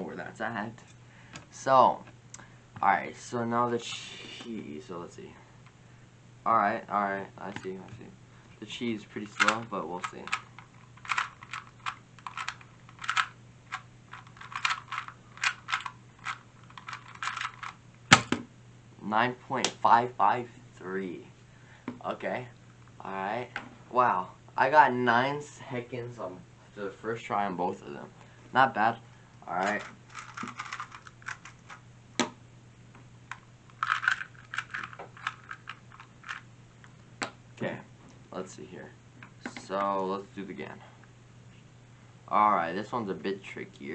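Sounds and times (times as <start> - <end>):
speed cube clicking: 9.4 - 17.8.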